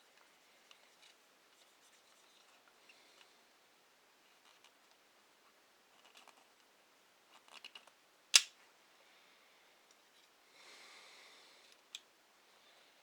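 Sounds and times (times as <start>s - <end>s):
soft rubbing hiss: 0.0s - 3.4s.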